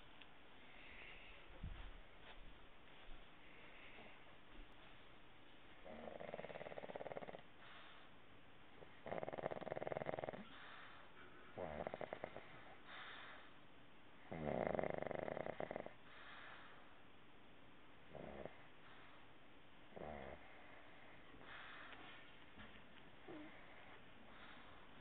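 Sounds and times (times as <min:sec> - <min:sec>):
soft breaths: 0:00.0 - 0:13.8, 0:15.5 - 0:17.2, 0:18.1 - 0:25.0
loud rattling snores: 0:05.8 - 0:07.4, 0:09.0 - 0:10.5, 0:11.6 - 0:12.5, 0:14.3 - 0:16.0, 0:18.1 - 0:18.6, 0:19.9 - 0:20.5.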